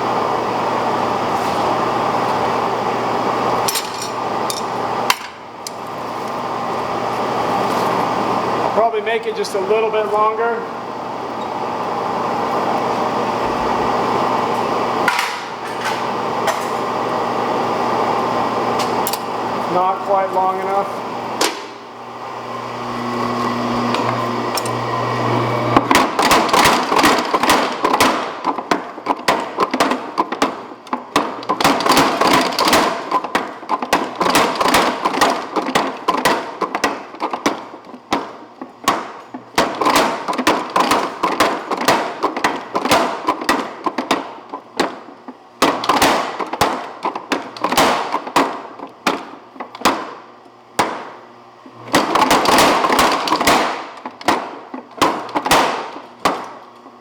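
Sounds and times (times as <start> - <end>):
power hammer motor humming: 16.9 - 27.8.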